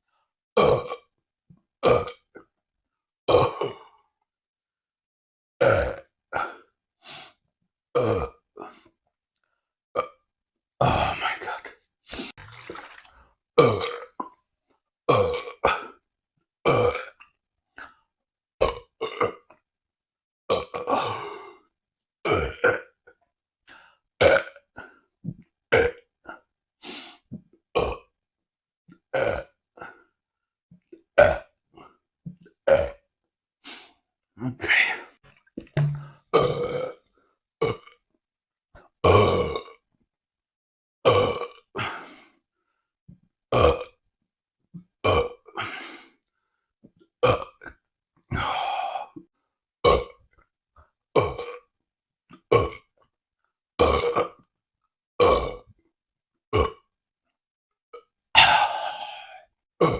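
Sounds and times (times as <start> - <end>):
person burping: 0.6 - 1.1, 1.8 - 2.3, 3.3 - 4.0, 5.6 - 6.6, 8.0 - 8.7, 10.0 - 10.2, 13.6 - 14.4, 15.1 - 16.0, 16.7 - 17.2, 18.6 - 19.5, 20.5 - 21.4, 22.2 - 23.0, 27.8 - 28.1, 29.2 - 29.6, 35.7 - 37.0, 39.1 - 39.8, 41.1 - 41.9, 43.5 - 44.0, 45.0 - 45.6, 47.2 - 47.7, 49.8 - 50.2, 51.2 - 51.6, 52.5 - 52.9, 53.8 - 54.4, 55.2 - 55.7, 56.6 - 56.8, 58.0 - 59.9.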